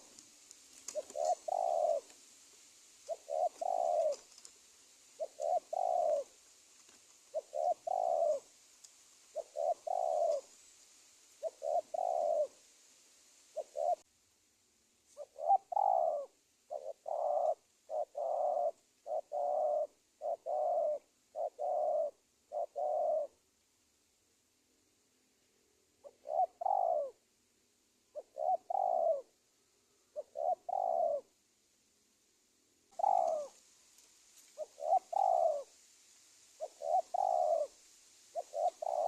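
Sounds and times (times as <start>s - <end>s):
dove cooing: 0.0s - 2.2s, 3.0s - 4.5s, 5.1s - 8.5s, 9.3s - 10.6s, 11.4s - 12.6s, 13.5s - 14.1s, 15.1s - 23.4s, 26.0s - 27.2s, 28.1s - 31.4s, 32.9s - 33.6s, 34.4s - 35.7s, 36.6s - 39.0s.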